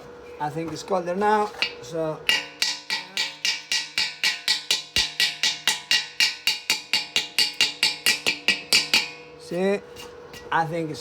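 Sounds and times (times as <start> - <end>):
hammer strikes on steel tank: 1.6 - 9.4
tank shell ringing: 1.6 - 9.4.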